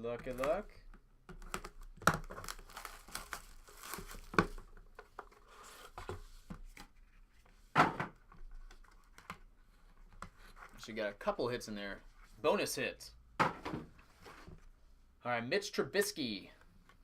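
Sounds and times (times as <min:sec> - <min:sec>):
plastic wrapping tearing and crinkling: 0:01.4 - 0:04.6.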